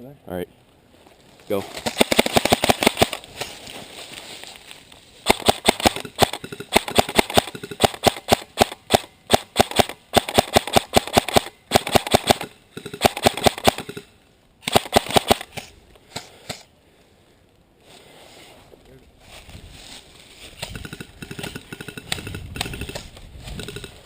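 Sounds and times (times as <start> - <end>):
airsoft rifles firing bursts: 1.8 - 3.2, 5.2 - 15.7, 20.7 - 24.0.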